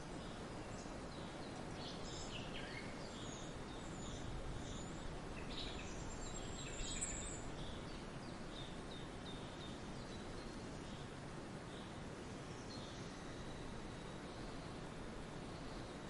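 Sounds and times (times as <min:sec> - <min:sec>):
background hiss: 0:00.0 - 0:16.0.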